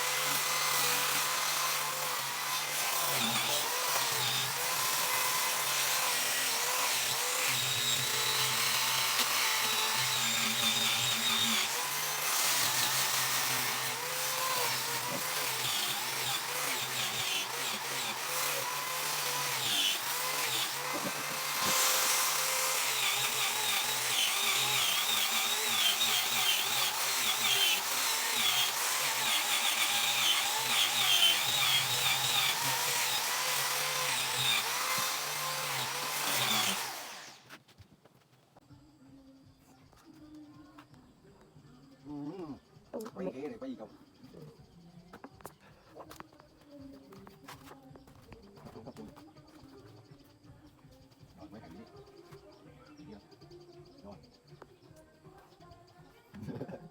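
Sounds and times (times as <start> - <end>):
electric power tool cutting wood: 0.0 - 37.6.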